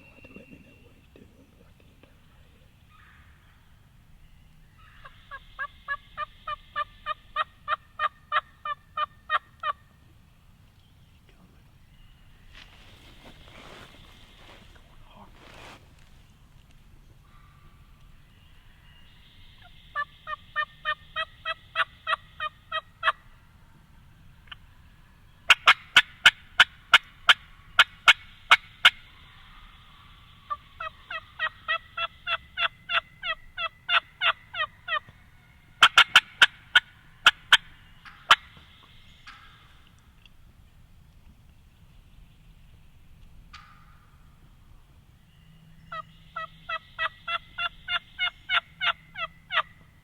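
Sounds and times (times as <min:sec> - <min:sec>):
turkey yelping: 0:04.8 - 0:09.8, 0:30.5 - 0:35.1, 0:45.9 - 0:49.8.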